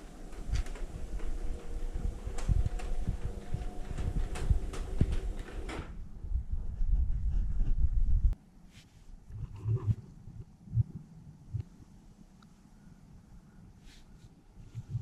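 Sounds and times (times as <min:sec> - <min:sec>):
low rumble: 0:00.0 - 0:08.4.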